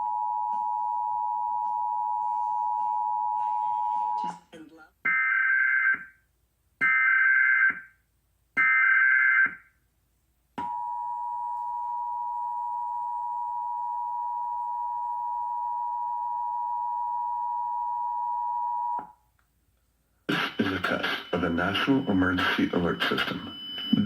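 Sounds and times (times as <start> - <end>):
digital data bursts: 20.3 - 24.0
steady two-tone attention signal: 20.3 - 24.0.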